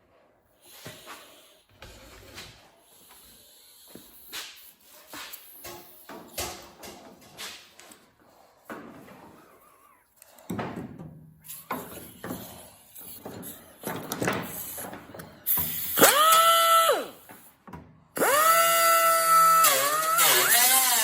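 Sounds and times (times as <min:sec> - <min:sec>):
metal knocking and scraping: 0:05.6 - 0:07.8, 0:10.5 - 0:15.8
electric power tool whining: 0:15.6 - 0:17.3, 0:18.2 - 0:21.0.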